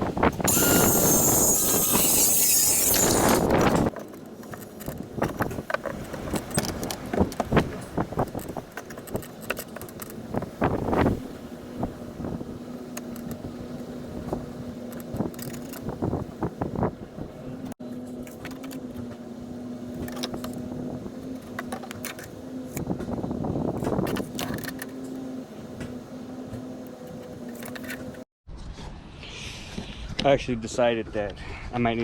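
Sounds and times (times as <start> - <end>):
power tool running: 0.5 - 3.9.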